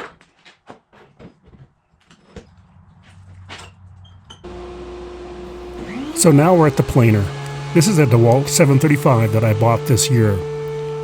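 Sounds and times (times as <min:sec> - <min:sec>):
planer motor whine: 0:04.5 - 0:11.0.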